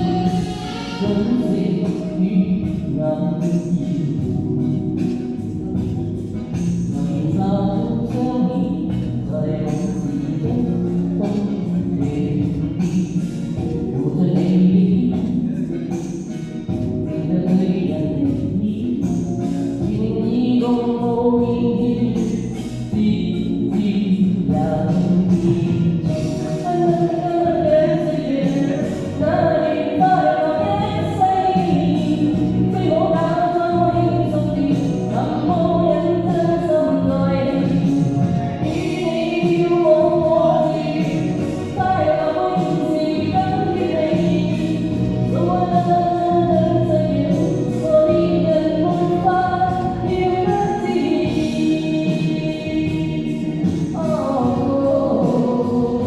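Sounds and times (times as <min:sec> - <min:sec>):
person singing with echo: 0:00.0 - 0:05.1, 0:06.5 - 0:16.4, 0:17.1 - 0:56.0
karaoke backing track: 0:00.0 - 0:56.0.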